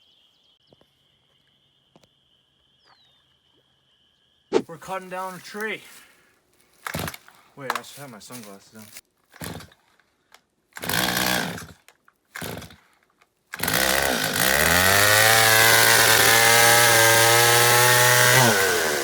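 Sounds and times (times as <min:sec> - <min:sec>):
chainsaw engine revving: 0:06.8 - 0:07.3, 0:09.4 - 0:09.8, 0:10.8 - 0:12.8, 0:13.5 - 0:19.0.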